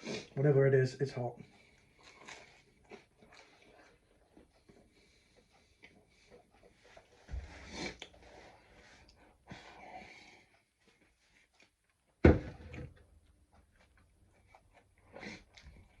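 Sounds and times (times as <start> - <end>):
person breathing and sniffing: 4.9 - 10.6.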